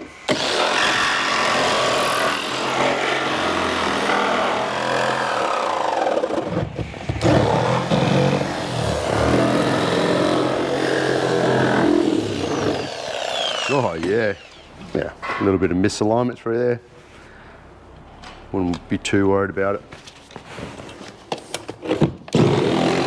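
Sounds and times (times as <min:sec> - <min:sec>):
chainsaw cutting through steel: 0:00.0 - 0:06.4, 0:07.2 - 0:14.7, 0:22.3 - 0:23.0.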